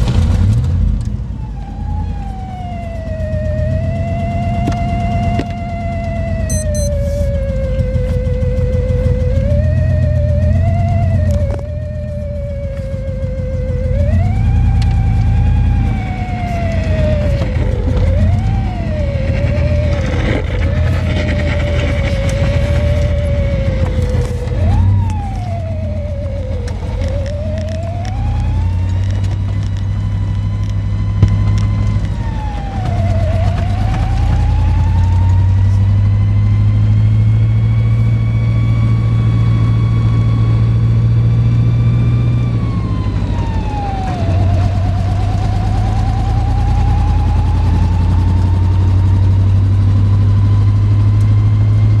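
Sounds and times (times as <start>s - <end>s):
low engine hum: 0.0s - 52.0s
vehicle siren wailing: 0.8s - 52.0s.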